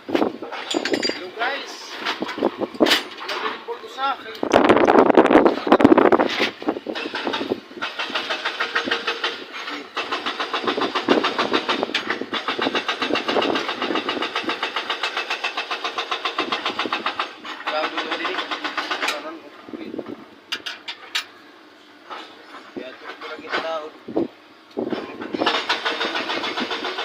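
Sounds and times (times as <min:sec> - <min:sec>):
diesel engine knocking: 0:06.9 - 0:19.2, 0:25.4 - 0:27.0.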